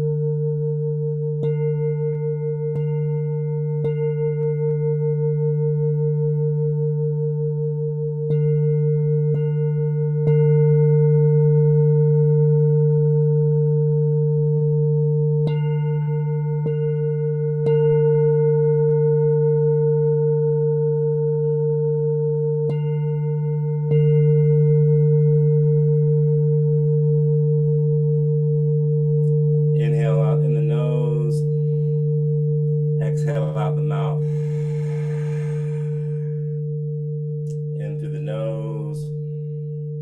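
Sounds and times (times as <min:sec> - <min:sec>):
singing bowl ringing: 0:00.0 - 0:40.0.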